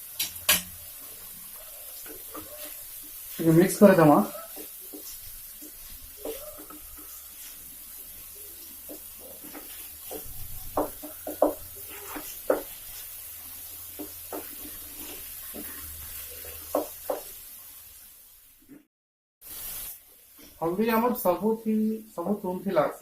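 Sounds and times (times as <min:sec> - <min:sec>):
faint sizzle: 0:00.0 - 0:23.0
utensil knocking and scraping pan: 0:08.8 - 0:12.8, 0:13.9 - 0:15.8.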